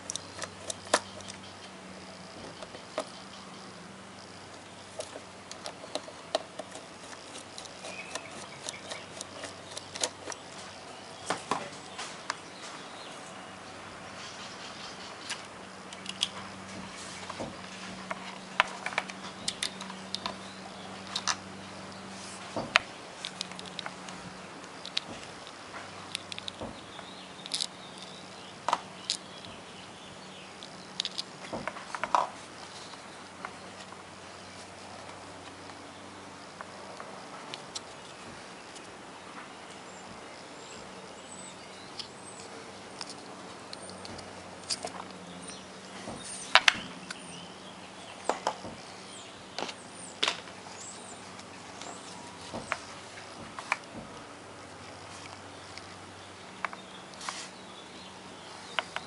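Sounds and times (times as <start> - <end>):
small parts clicking and tapping: 0.0 - 1.8, 4.2 - 12.4, 15.2 - 21.5, 22.4 - 29.8, 30.5 - 34.0, 41.9 - 47.2
steady faint hum: 0.0 - 59.0.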